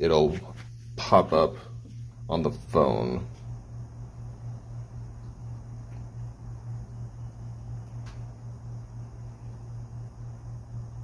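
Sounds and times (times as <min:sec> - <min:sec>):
low hum: 0:00.0 - 0:11.0.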